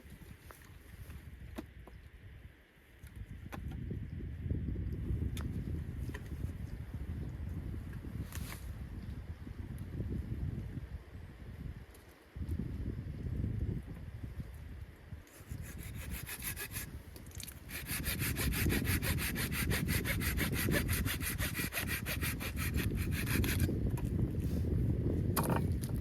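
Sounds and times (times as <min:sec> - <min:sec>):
hand saw cutting wood: 0:15.3 - 0:23.7.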